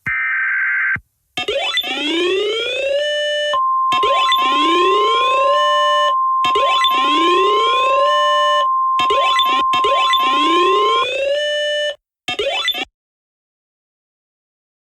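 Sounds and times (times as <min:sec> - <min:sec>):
steady high beep tone: 0:03.5 - 0:11.1.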